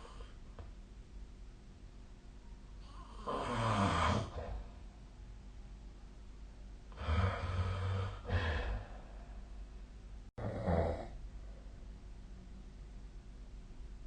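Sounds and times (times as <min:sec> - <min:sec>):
person snoring: 0:02.8 - 0:04.6, 0:06.9 - 0:09.1, 0:10.4 - 0:11.2.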